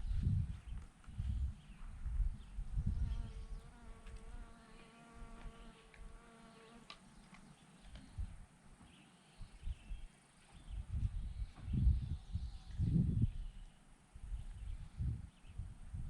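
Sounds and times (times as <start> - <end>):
low wind or handling thumps: 0.0 - 4.4, 7.9 - 13.5
flying insect buzzing: 3.0 - 6.9.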